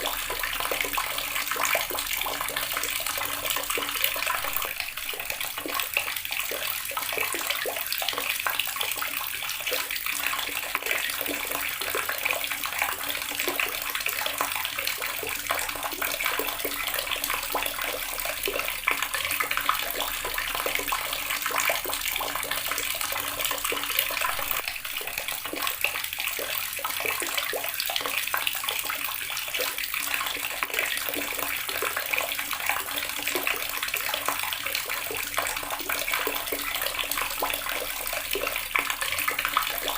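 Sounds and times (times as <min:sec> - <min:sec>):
tap water splashing into basin: 0:00.0 - 0:39.9.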